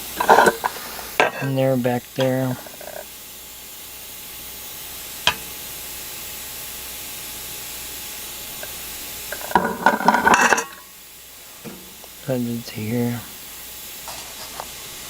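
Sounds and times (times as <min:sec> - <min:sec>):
background hiss: 0:00.0 - 0:15.0.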